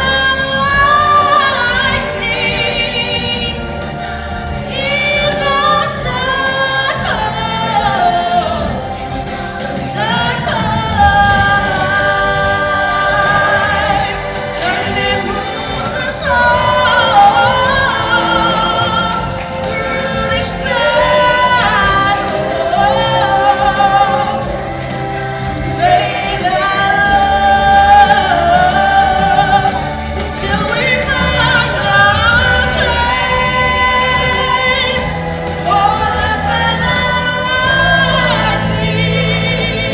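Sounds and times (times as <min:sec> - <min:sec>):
instrumental backing: 0:00.0 - 0:39.9
voices singing together: 0:00.0 - 0:39.9.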